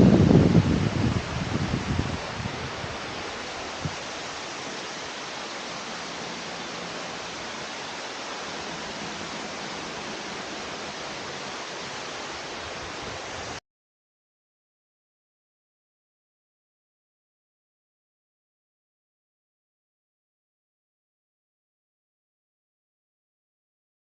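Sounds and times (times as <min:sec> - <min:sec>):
waterfall rushing: 0:00.0 - 0:13.6.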